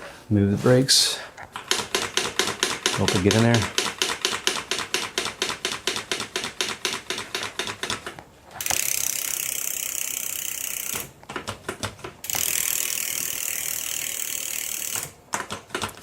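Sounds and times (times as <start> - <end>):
bicycle freewheel clicking: 8.6 - 11.2, 12.2 - 15.2.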